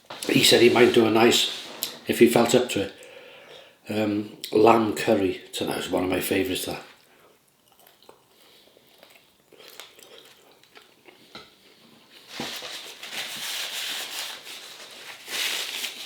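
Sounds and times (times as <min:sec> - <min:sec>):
quiet chewing: 0:07.0 - 0:11.9
crunching fried food: 0:07.6 - 0:11.2.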